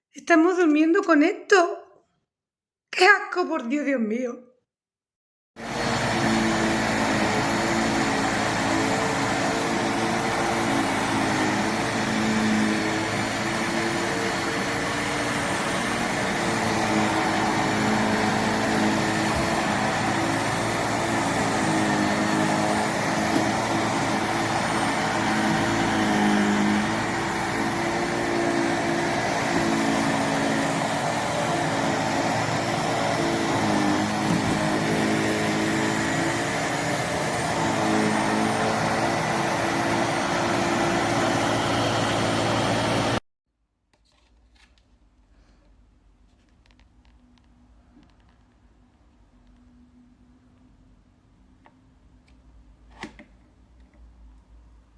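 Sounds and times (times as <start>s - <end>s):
handheld vacuum whirring: 5.6s - 43.2s.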